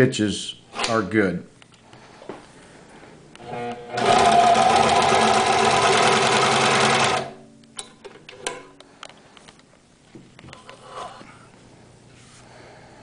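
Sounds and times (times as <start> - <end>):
sewing machine running: 4.0 - 7.4.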